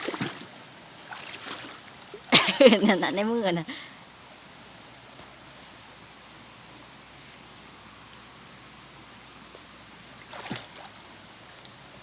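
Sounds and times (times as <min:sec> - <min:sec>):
water splash: 0:00.0 - 0:02.5, 0:10.2 - 0:11.0
insects chorus: 0:00.0 - 0:12.0.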